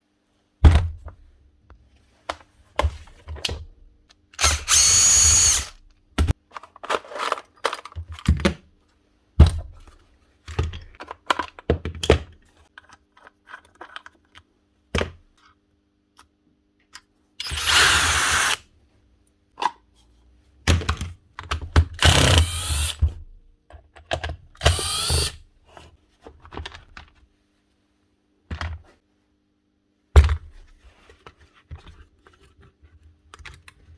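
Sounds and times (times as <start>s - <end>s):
power tool motor whining: 4.4s - 5.8s, 17.4s - 18.6s, 22.0s - 23.0s, 24.6s - 25.4s.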